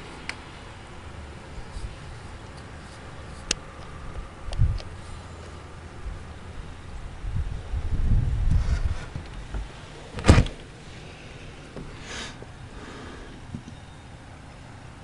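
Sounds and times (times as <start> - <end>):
soft hissing scrapes: 1.5 - 3.5, 4.9 - 5.8, 8.5 - 10.1, 10.7 - 13.5
wind buffeting microphone: 4.1 - 5.1, 6.0 - 10.5.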